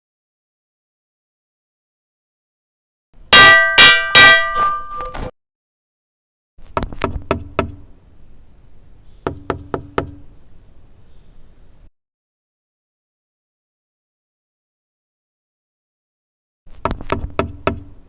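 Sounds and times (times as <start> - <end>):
loud ringing metallic strikes: 3.4 - 5.2.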